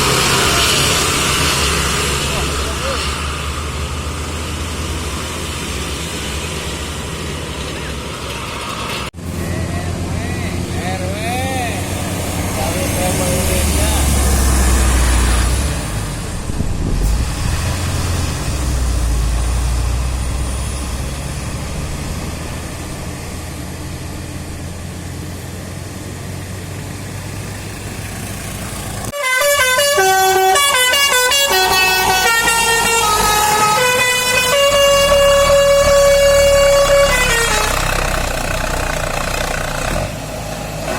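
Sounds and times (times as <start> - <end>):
vehicle engine and road rumble: 0.0 - 40.9
bus horn playing a tune: 29.1 - 39.2.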